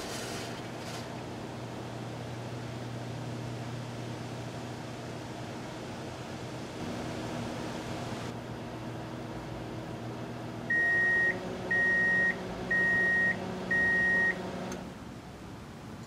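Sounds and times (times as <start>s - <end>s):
microwave oven humming: 0.0s - 15.0s
long even beeps: 10.7s - 14.4s.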